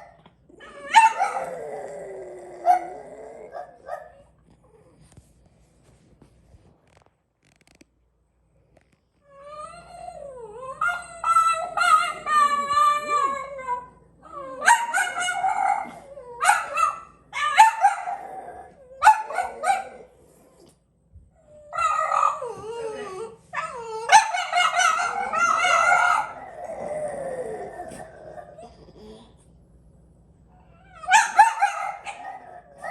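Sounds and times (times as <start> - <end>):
dogs howling: 0.6 - 4.2, 9.4 - 20.1, 21.5 - 29.3, 30.7 - 32.9.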